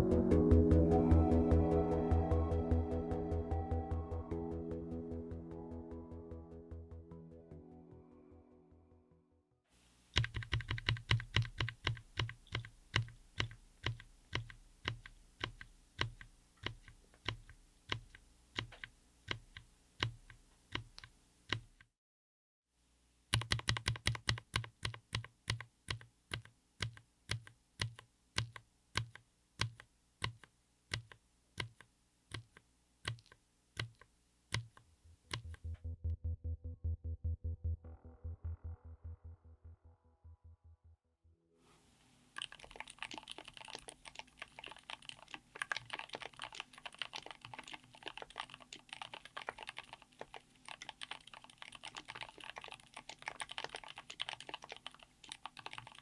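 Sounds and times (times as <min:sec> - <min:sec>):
mechanical keyboard typing: 0:10.1 - 0:21.8, 0:23.3 - 0:35.7, 0:42.4 - 0:56.0.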